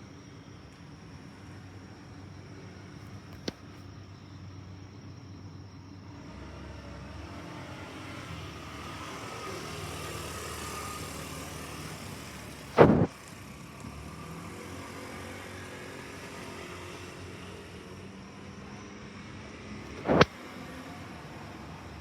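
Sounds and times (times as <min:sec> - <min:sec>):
loud thump: 0:12.7 - 0:13.1, 0:19.9 - 0:20.3.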